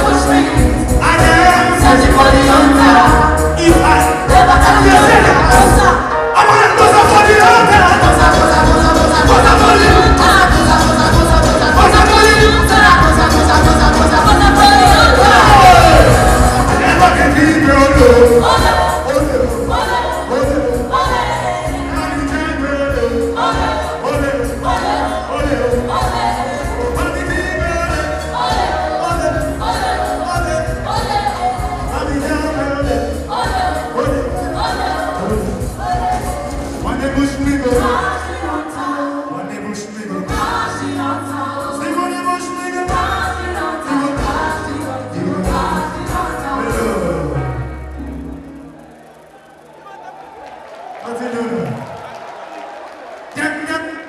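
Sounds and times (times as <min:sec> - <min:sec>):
steady bass line: 0:00.0 - 0:06.1, 0:07.2 - 0:38.6
group singing: 0:00.0 - 0:47.4
live band music: 0:00.0 - 0:50.3.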